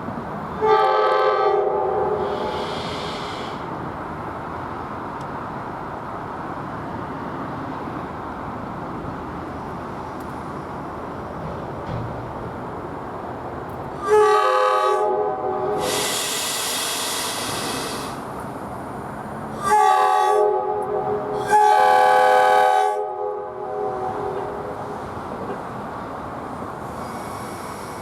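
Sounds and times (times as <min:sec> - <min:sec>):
train air horn blasts: 0:00.6 - 0:03.6, 0:14.0 - 0:18.2, 0:19.6 - 0:24.8
loud hiss: 0:02.2 - 0:03.7, 0:15.8 - 0:18.4, 0:26.8 - 0:28.0.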